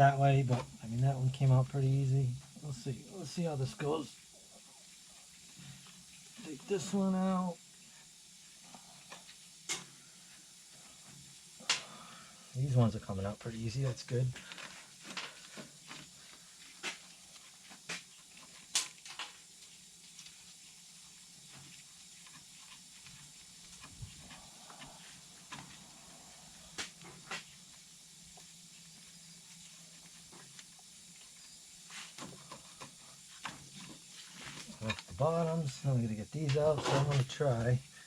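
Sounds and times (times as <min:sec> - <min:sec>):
steady low hum: 0:00.0 - 0:38.0.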